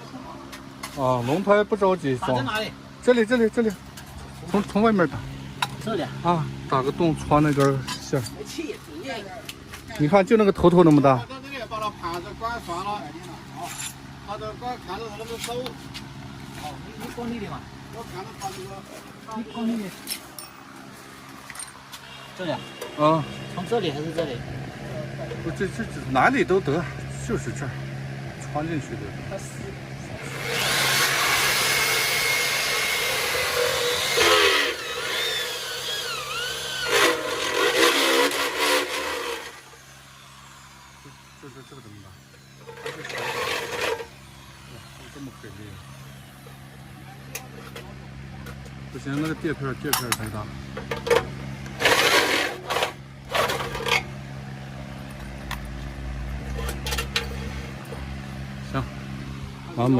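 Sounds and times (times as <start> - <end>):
metal tools clinking: 20.0 - 20.6, 21.4 - 21.8
electric drill boring: 30.2 - 46.4, 51.8 - 54.0
scraping rasp: 33.2 - 39.6, 42.6 - 44.2, 51.8 - 54.1.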